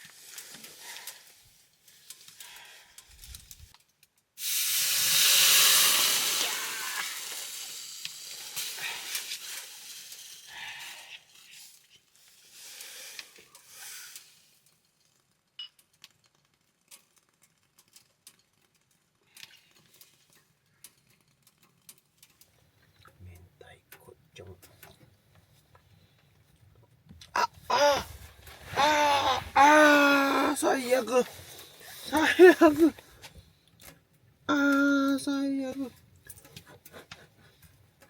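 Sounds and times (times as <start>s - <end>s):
grill hissing and sizzling: 0.0s - 3.7s, 4.4s - 15.2s, 27.7s - 33.3s
small crackles: 0.0s - 38.0s.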